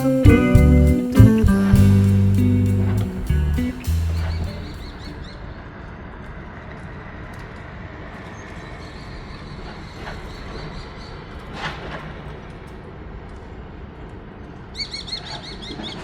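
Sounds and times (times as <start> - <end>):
low background rumble: 0.0 - 5.1.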